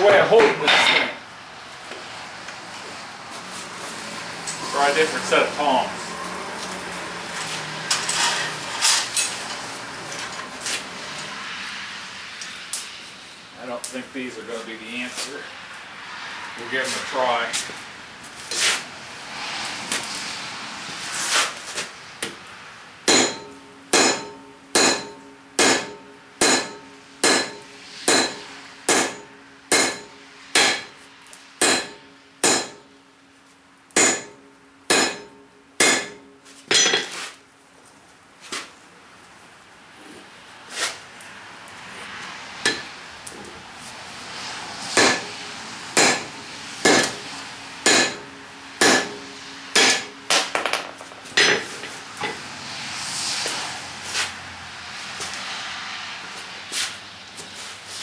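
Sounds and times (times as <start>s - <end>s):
hammer striking steel on anvil: 23.1s - 31.0s, 31.6s - 32.9s, 34.0s - 37.2s, 42.6s - 43.0s, 45.0s - 45.4s, 46.0s - 52.4s.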